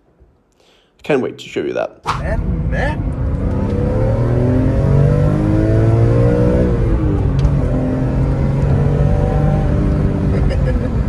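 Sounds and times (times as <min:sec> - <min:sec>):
car engine accelerating hard: 0:02.2 - 0:11.0.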